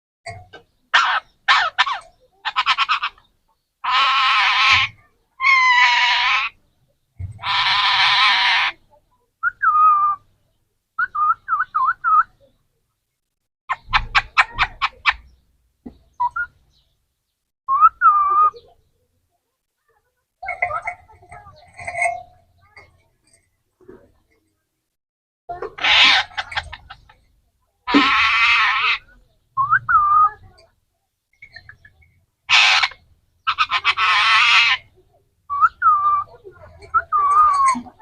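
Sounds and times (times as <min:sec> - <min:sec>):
parrot clicking chatter: 0:01.0 - 0:03.2, 0:25.7 - 0:27.2, 0:32.5 - 0:34.8
parrot squawking: 0:01.0 - 0:03.2, 0:03.8 - 0:06.6, 0:07.4 - 0:08.8, 0:25.7 - 0:27.1, 0:27.9 - 0:29.1, 0:32.5 - 0:34.9.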